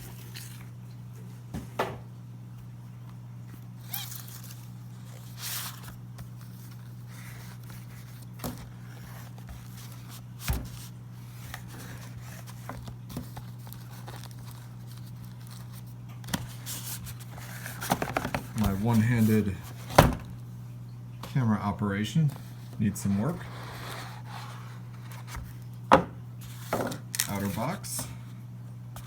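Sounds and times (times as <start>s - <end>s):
steady low hum: 0.0s - 29.0s
cardboard box scrapes and rustles: 3.8s - 19.9s, 22.4s - 25.6s.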